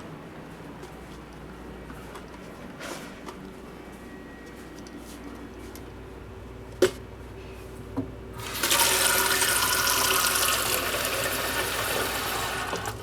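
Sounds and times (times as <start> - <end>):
faucet water running into cup: 8.4 - 13.0.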